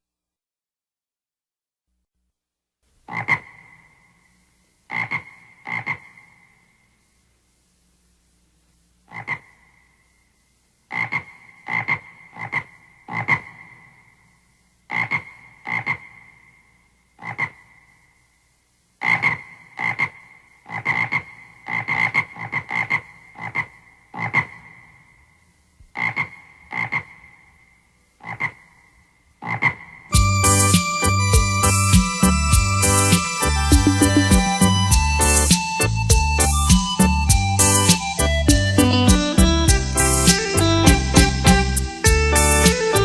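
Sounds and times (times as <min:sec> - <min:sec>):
music backing: 0:30.1 - 0:43.0
electronic keyboard struck notes: 0:30.2 - 0:43.0.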